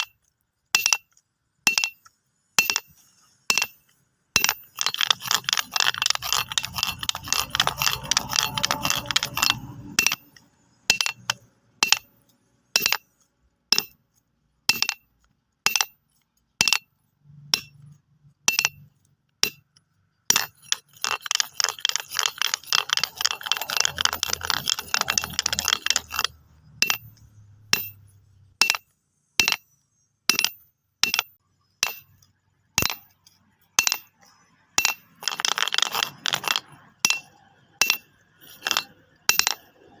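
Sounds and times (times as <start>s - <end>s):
stones clicking together: 4.4s - 12.2s, 20.3s - 27.2s, 34.8s - 40.0s.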